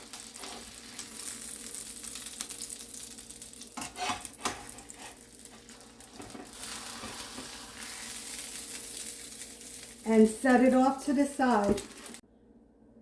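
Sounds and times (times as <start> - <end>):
chicken frying in oil: 0.0 - 12.2.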